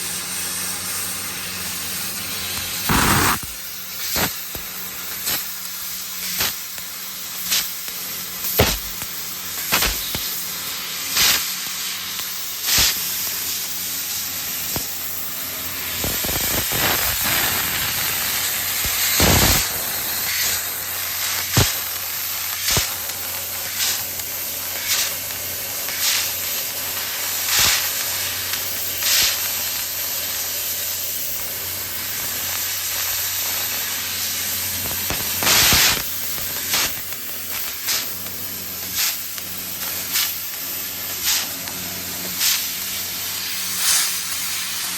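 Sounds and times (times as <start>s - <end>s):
laser cutter hissing: 2.8s - 4.4s, 16.0s - 30.5s, 31.2s - 44.9s
loud cutting bursts: 2.9s - 3.6s.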